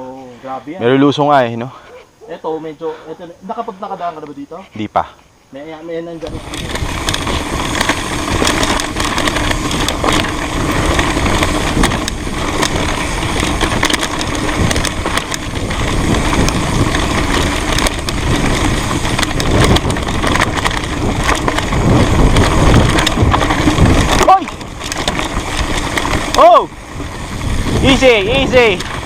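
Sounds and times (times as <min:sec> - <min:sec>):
bike clattering and rattling: 0:06.2 - 0:29.0
tyres crunching over stones: 0:06.2 - 0:29.0.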